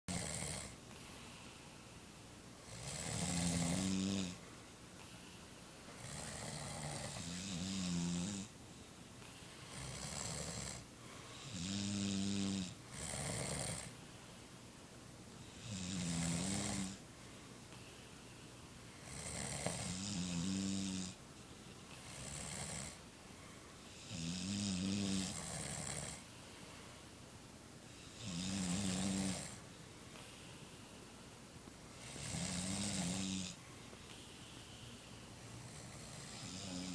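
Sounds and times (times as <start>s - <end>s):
men snoring: 2.7s - 4.4s, 6.0s - 8.5s, 15.6s - 17.0s, 32.0s - 33.6s, 35.6s - 36.9s.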